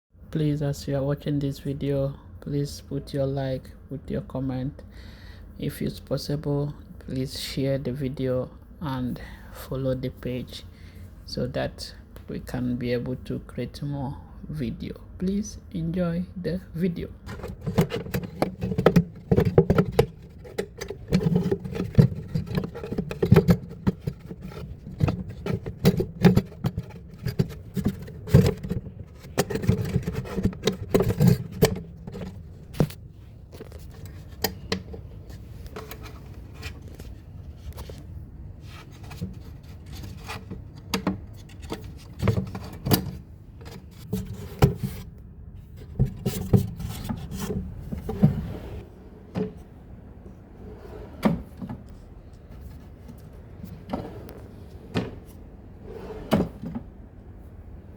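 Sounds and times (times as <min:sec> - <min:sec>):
scraping on wooden drawer: 0:17.2 - 0:33.0, 0:45.8 - 0:49.6, 0:53.7 - 0:56.8.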